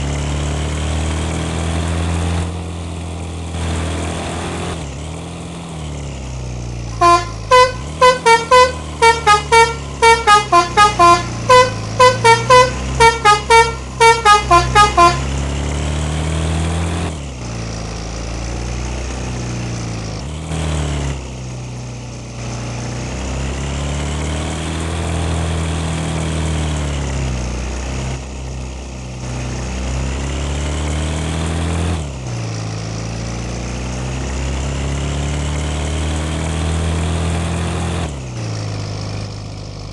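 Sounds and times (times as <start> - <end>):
bus engine running: 0.0 - 39.9
bus horn playing melody: 7.0 - 15.4.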